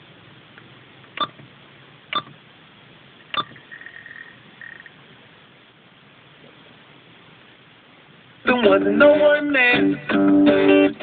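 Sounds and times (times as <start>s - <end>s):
short high electronic beeps: 3.3s - 4.9s.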